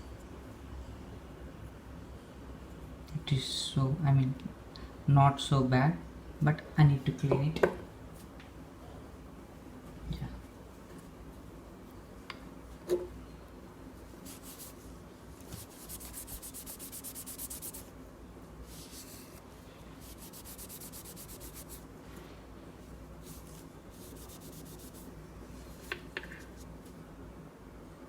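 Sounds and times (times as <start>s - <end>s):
rubbing on plastic: 14.2s - 14.8s, 15.4s - 17.9s, 20.0s - 21.8s, 23.2s - 25.2s.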